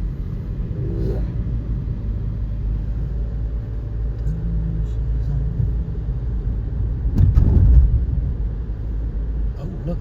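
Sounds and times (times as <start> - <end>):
car cabin rumble: 0.0 - 10.0.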